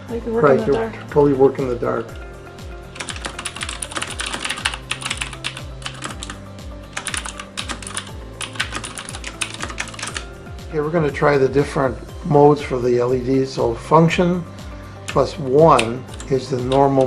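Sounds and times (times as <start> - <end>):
fast typing on mechanical keyboard: 2.9 - 10.2, 15.8 - 16.3.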